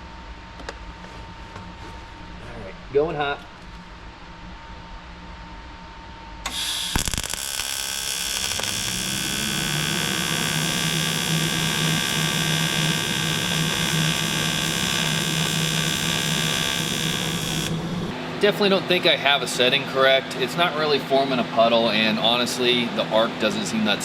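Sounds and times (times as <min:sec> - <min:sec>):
welding arc buzzing: 0:06.4 - 0:18.1.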